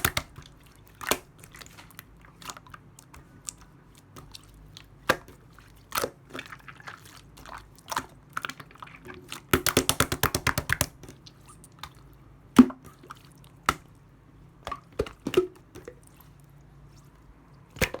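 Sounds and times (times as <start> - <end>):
slime squishing with wet clicks: 0.0 - 18.0.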